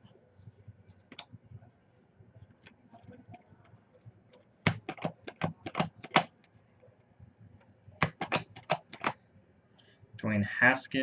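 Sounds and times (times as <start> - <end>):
typing on computer keyboard: 4.3 - 6.4, 8.0 - 9.2.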